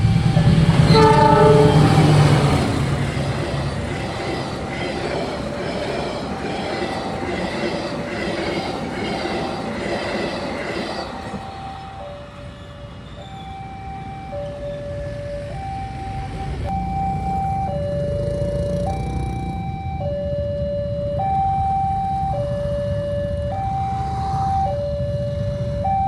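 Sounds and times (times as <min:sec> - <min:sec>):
train horn: 0:00.0 - 0:03.7
train rumble: 0:00.0 - 0:26.0
level crossing two-tone alarm: 0:10.0 - 0:26.0.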